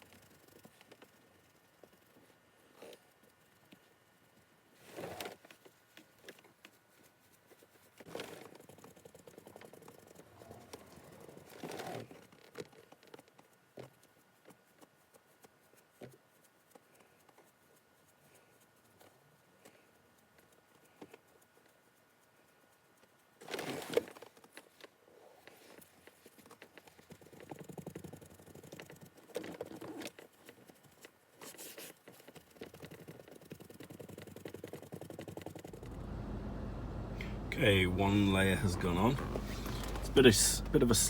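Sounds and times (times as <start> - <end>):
rustling handling noises: 4.7 - 41.0
sponge dabbing on leather: 26.1 - 29.8, 30.4 - 36.0.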